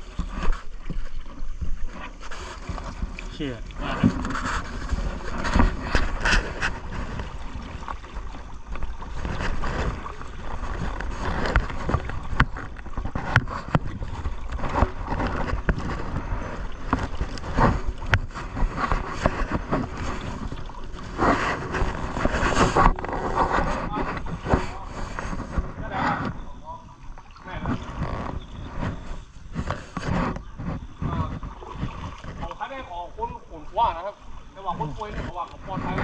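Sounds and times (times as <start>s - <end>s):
boat motor rumble: 0.0s - 36.0s
wind buffeting microphone: 2.8s - 36.0s.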